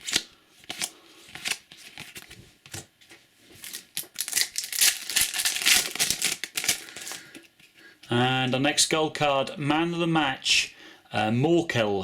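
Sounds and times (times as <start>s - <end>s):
card and wrapper crinkling: 0.0s - 2.9s, 3.6s - 7.6s
trading cards clicking and rustling: 3.6s - 7.6s.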